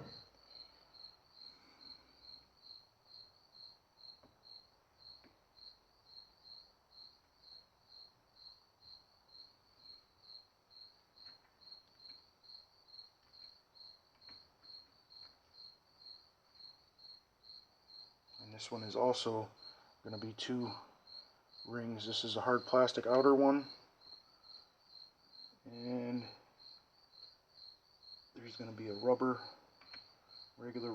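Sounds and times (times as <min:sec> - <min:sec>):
faint cricket chirping: 0:00.0 - 0:30.9
soft clicks of small parts: 0:29.8 - 0:30.1.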